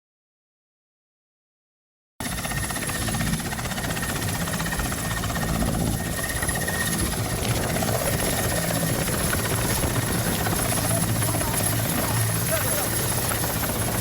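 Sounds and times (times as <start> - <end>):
helicopter engine: 2.2 - 14.0
helicopter rotor chop: 2.2 - 14.0.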